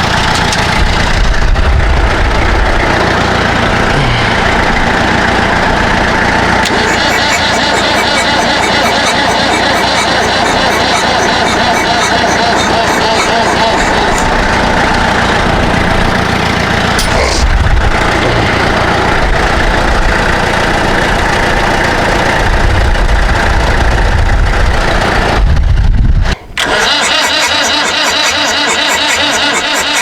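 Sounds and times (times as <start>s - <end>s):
fast even pulsing: 0.0s - 21.7s, 26.4s - 30.0s
diesel engine cranking: 0.0s - 30.0s.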